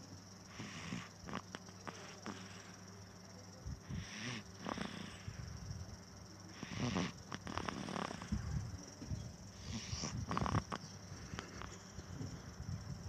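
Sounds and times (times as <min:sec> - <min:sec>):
baby snoring: 0:00.5 - 0:02.8, 0:03.9 - 0:05.5, 0:06.5 - 0:08.4, 0:09.5 - 0:11.8.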